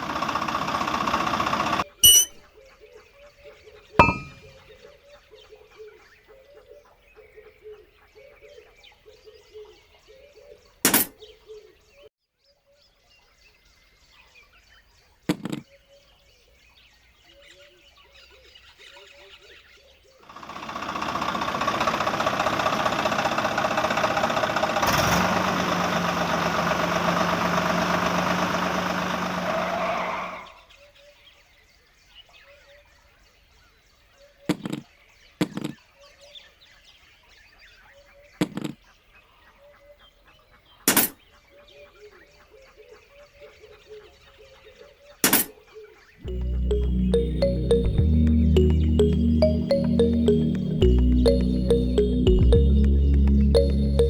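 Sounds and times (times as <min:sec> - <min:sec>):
faint bird chirps: 0:02.0 - 0:02.4.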